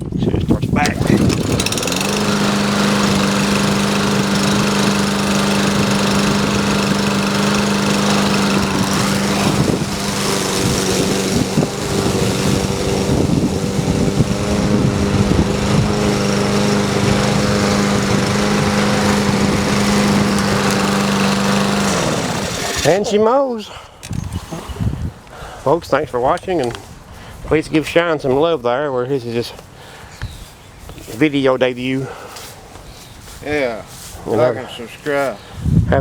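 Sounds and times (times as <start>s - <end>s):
lawn mower engine running: 0.5s - 23.2s.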